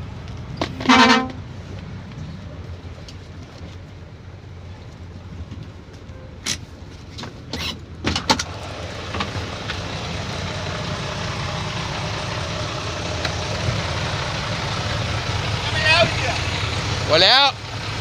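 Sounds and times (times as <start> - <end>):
vehicle engine running: 8.4 - 18.0.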